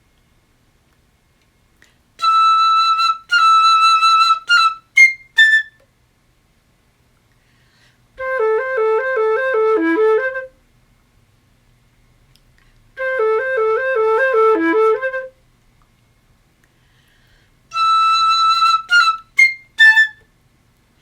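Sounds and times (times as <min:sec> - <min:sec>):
solo flute playing: 0:02.2 - 0:05.8, 0:08.2 - 0:10.6, 0:13.0 - 0:15.4, 0:17.7 - 0:20.2.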